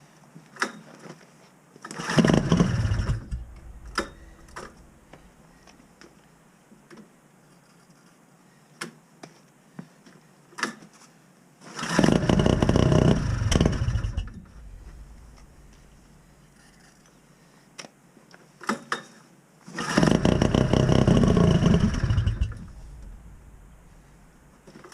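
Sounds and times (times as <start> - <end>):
rotary engine cranking: 1.9 - 5.3, 11.7 - 16.8, 19.8 - 24.3.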